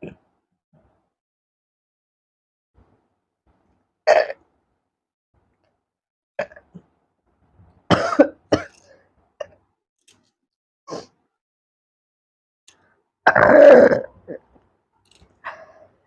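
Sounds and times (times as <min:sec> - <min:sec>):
woman burping: 0:04.1 - 0:04.4, 0:13.3 - 0:14.4.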